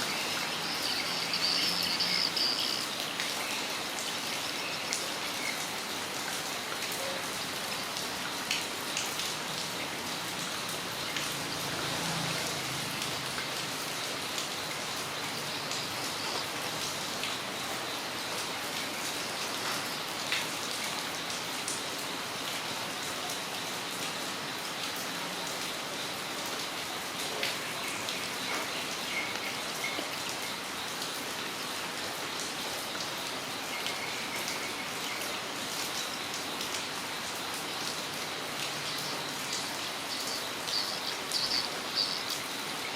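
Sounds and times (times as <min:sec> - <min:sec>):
raindrops ticking: 0:00.0 - 0:21.9, 0:27.3 - 0:31.2
steady rain: 0:00.0 - 0:42.9.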